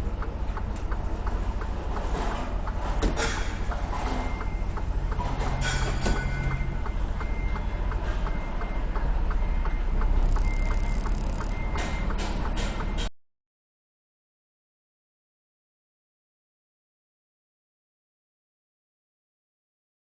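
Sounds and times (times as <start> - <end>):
diesel truck engine running: 0.0 - 13.1.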